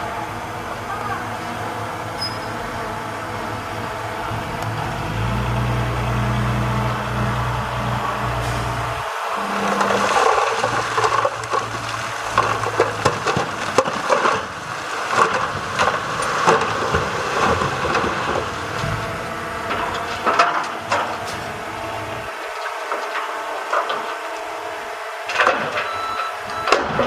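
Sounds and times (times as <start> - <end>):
truck engine running: 0.0 - 27.0
stones and soil tumbling: 9.4 - 21.6.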